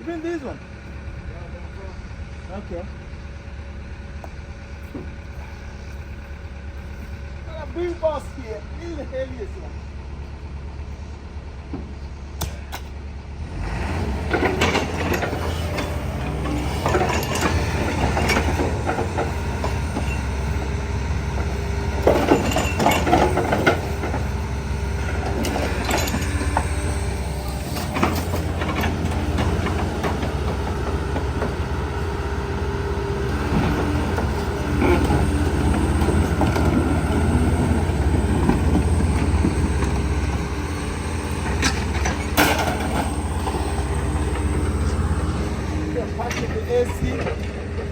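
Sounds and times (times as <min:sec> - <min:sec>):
heavy engine droning: 0:00.0 - 0:47.9
scrap metal clanking: 0:14.2 - 0:20.7, 0:21.4 - 0:24.3, 0:41.3 - 0:43.7.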